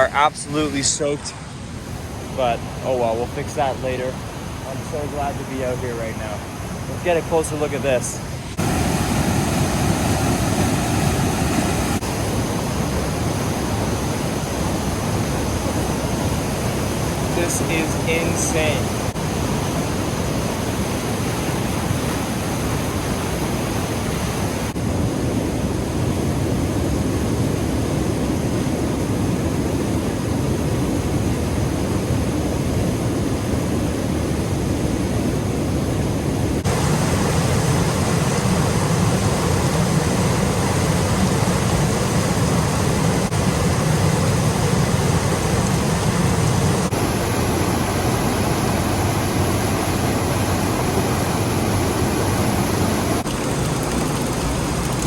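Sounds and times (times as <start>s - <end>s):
waterfall rushing: 0.0s - 24.8s, 36.6s - 55.0s.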